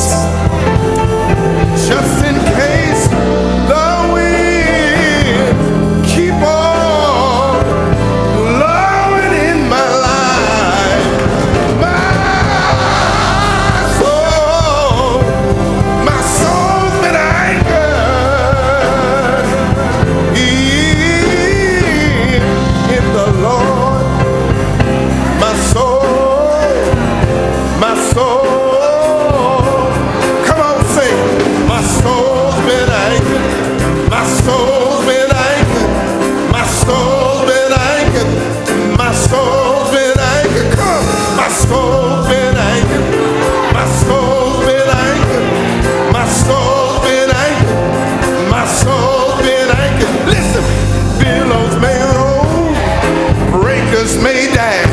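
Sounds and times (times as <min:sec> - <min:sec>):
band with drums and bass: 0:00.0 - 0:54.9
gospel singing with vibrato: 0:00.0 - 0:54.9.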